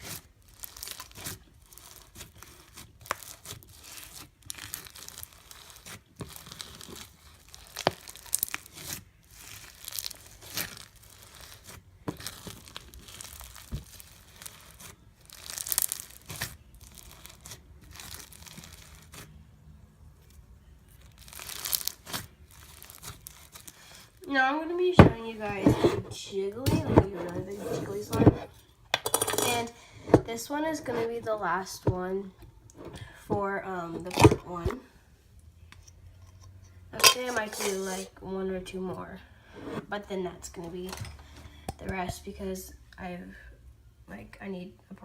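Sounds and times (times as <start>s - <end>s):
slime crackling and crunching: 0.0s - 19.4s, 20.9s - 24.3s.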